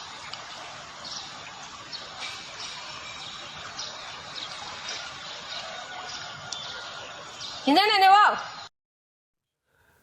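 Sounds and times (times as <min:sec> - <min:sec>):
floodwater rushing: 0:00.0 - 0:07.7.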